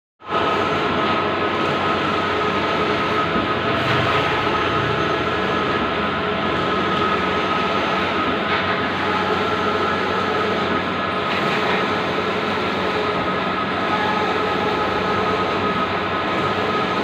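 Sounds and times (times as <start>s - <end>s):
printer mechanical whir: 0.2s - 17.0s.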